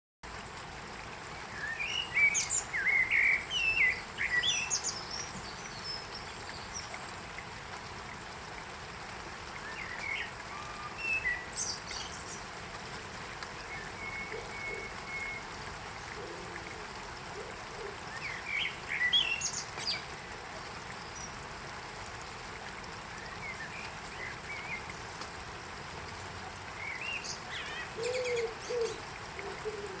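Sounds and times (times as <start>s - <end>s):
light rain on leaves: 0.2s - 30.0s
songbirds chirping and warbling: 1.4s - 7.0s, 9.4s - 12.5s, 17.4s - 21.4s, 26.1s - 30.0s.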